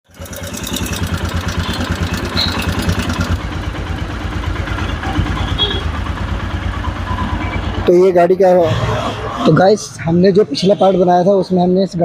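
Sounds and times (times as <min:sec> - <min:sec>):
motorcycle engine idling: 0:00.1 - 0:08.4
fast engine ticking: 0:00.1 - 0:08.7.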